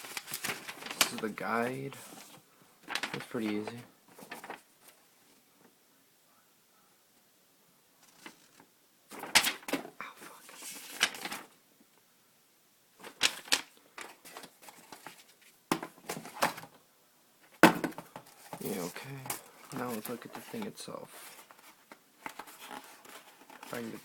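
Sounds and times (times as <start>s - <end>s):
packaging clicking and rustling: 0.0s - 1.4s, 2.8s - 4.7s, 9.1s - 9.9s, 10.7s - 11.5s, 13.0s - 16.8s, 21.3s - 24.0s.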